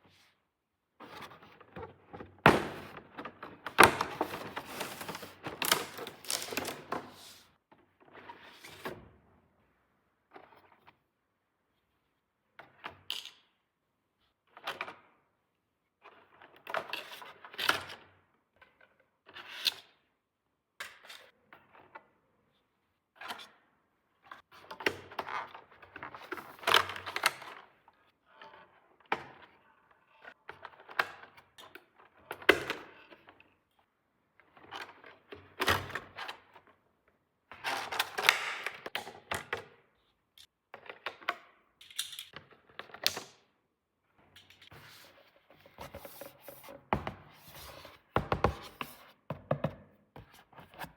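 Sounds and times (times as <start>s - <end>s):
plastic pieces rattling: 4.7s - 6.9s
plastic toy pieces clicking: 41.8s - 42.3s.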